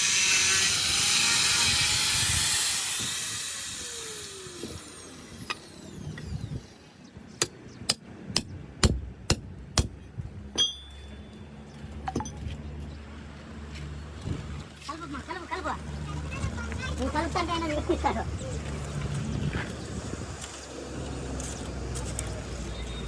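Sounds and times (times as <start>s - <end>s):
tool knocking hard: 8.4s - 10.0s
metallic clink ringing: 10.6s - 11.5s.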